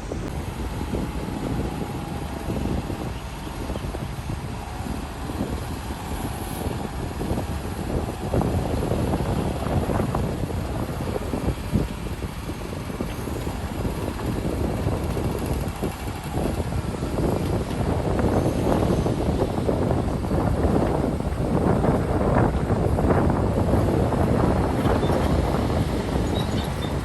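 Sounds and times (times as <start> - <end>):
diesel engine rumble: 0.0 - 27.0.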